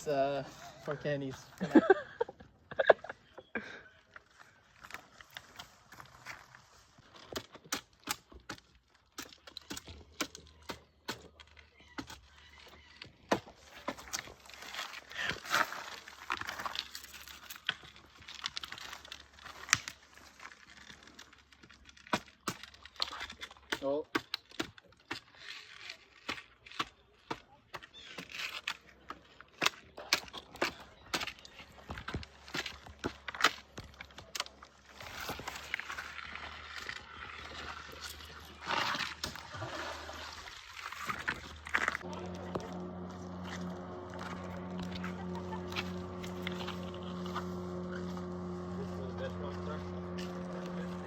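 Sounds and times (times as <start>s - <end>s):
sticks and twigs snapping: 13.3s - 27.4s
leaf litter rustling: 41.5s - 51.0s.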